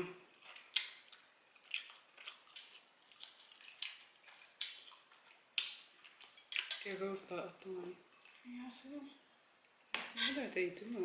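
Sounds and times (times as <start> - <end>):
mouth chewing food: 0.3 - 6.7.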